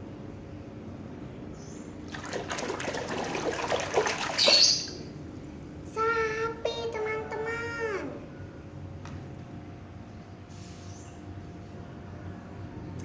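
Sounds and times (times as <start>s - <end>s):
water splashing and pouring: 2.1s - 4.9s
high drawn-out voice: 5.9s - 8.3s.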